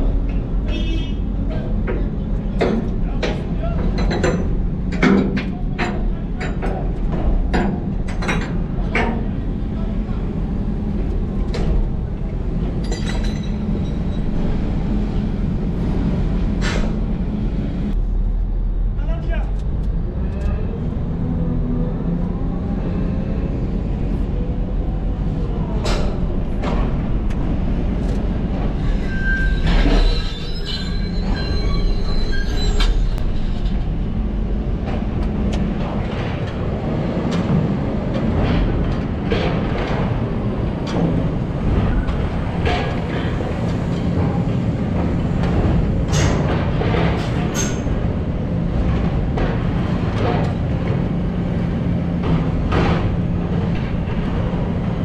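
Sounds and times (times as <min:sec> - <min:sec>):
metal squealing: 0:28.7 - 0:33.8.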